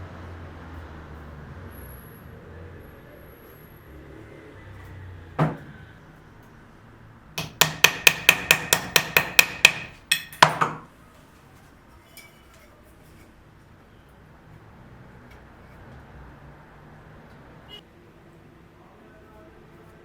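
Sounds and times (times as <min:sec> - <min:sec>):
hammer tapping: 0:07.4 - 0:10.9.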